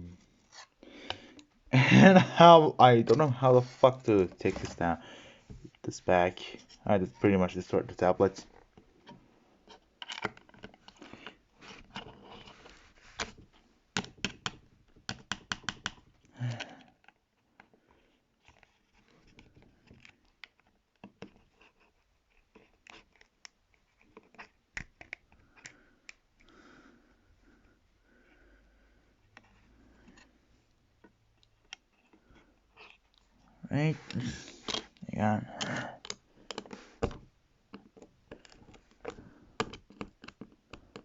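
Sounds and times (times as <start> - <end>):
plastic parts clicking: 9.1 - 12.2, 34.0 - 41.0
plastic scraping and crackling: 34.0 - 41.0.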